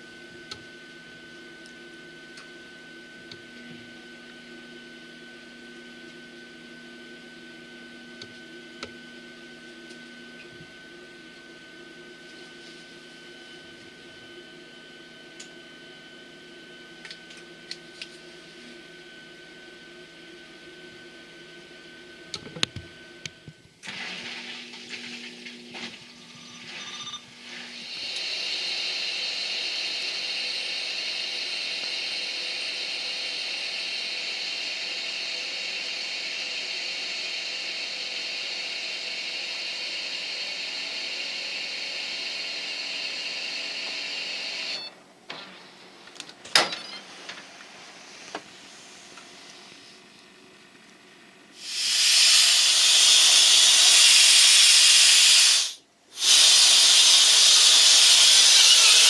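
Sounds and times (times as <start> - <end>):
compressed air hissing: 51.6 - 59.0.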